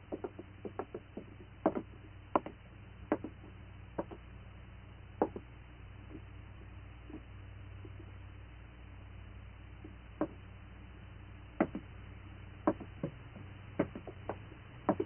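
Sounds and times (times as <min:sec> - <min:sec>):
steady low hum: 0:00.0 - 0:15.0
light knocks and clicks: 0:12.7 - 0:15.0.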